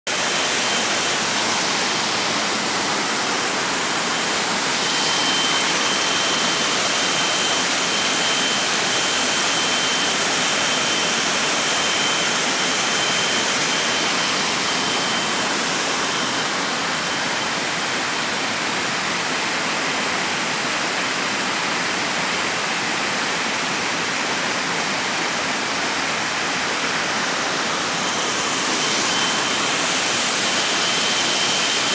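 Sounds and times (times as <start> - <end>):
waterfall rushing: 0.1 - 7.7, 22.2 - 31.9
thin high steady tone: 0.1 - 18.6, 25.9 - 31.9.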